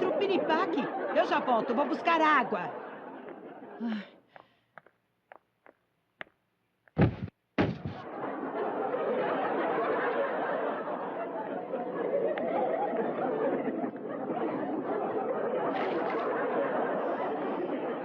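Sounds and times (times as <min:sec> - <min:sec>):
studio audience laughing: 0:00.0 - 0:03.8, 0:08.0 - 0:18.0
loud thuds: 0:06.9 - 0:08.1.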